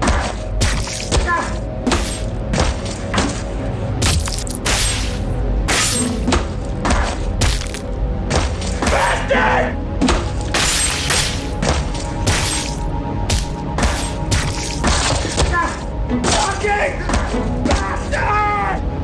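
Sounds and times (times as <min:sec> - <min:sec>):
lightsaber clash hits: 0:04.0 - 0:06.2.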